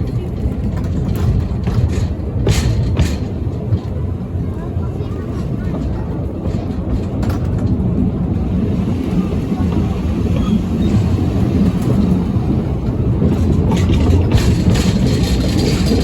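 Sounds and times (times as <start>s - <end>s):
train rumbling: 0.0s - 16.0s
train wheel clicks: 0.0s - 16.0s.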